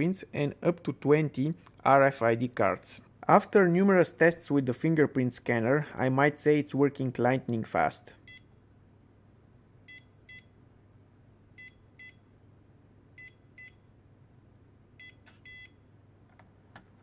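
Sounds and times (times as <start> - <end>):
electronic door lock beeps: 9.9 - 10.5, 13.2 - 13.8, 15.0 - 15.8.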